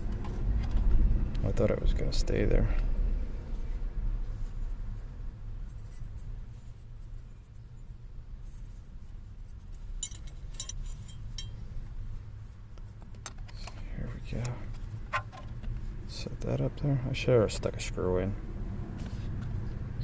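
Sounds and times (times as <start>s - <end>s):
low steady hum: 0.0s - 20.0s
light clicks and taps of parts: 12.7s - 16.5s.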